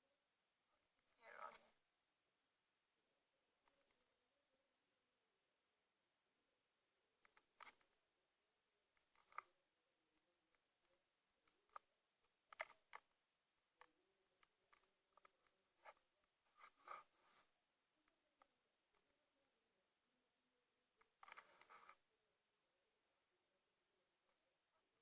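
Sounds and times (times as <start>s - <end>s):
faint small clicks: 3.6s - 4.2s, 7.2s - 8.0s, 8.9s - 9.5s, 10.2s - 13.2s, 13.8s - 17.1s, 18.0s - 19.2s, 21.0s - 22.0s.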